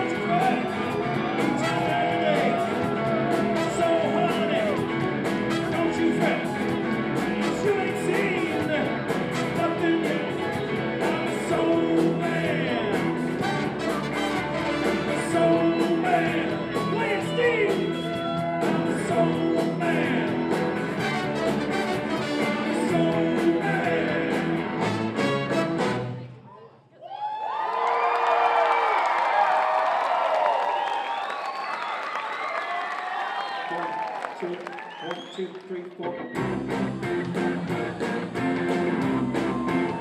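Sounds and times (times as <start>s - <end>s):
person singing: 0.0s - 25.0s
steady drum beat: 0.0s - 25.1s, 36.4s - 40.0s
rock-and-roll music: 0.0s - 26.3s, 36.0s - 40.0s.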